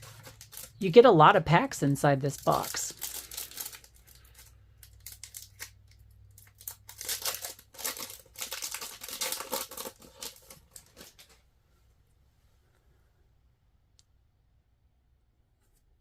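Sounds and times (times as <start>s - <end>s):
wrapper crinkling and tearing: 0.0s - 1.0s, 1.7s - 11.4s.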